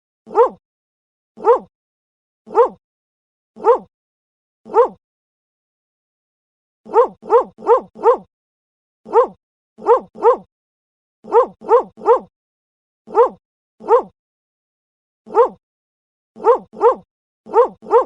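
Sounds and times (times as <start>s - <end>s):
dog barking: 0.3s - 0.6s, 1.4s - 1.7s, 2.5s - 2.8s, 3.6s - 3.9s, 4.7s - 5.0s, 6.9s - 8.3s, 9.1s - 10.5s, 11.2s - 12.3s, 13.1s - 14.2s, 15.3s - 15.6s, 16.4s - 18.0s.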